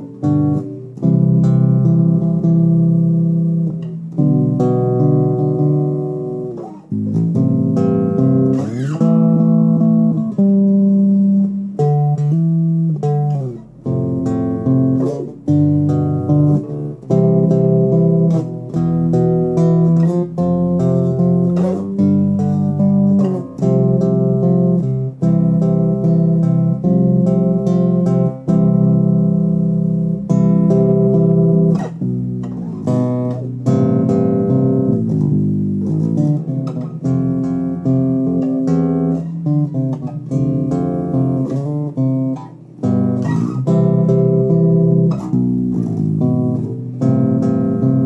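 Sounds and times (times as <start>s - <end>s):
bass guitar finger-style: 0.0s - 48.0s.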